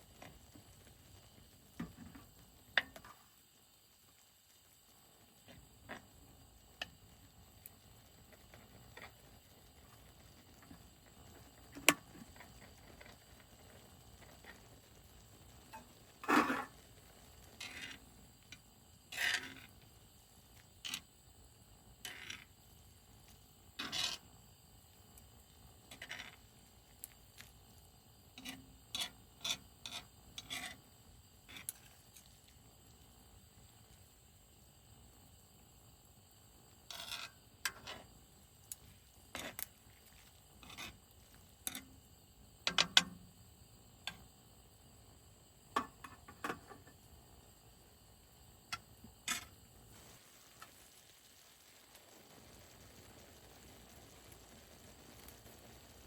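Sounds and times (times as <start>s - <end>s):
small objects clicking and scraping: 15.7s - 16.8s, 17.5s - 19.8s, 20.6s - 21.1s, 22.0s - 22.5s, 23.3s - 24.3s, 25.9s - 27.6s, 28.4s - 30.8s, 31.5s - 32.6s, 36.9s - 38.1s, 38.7s - 42.0s, 48.7s - 51.0s.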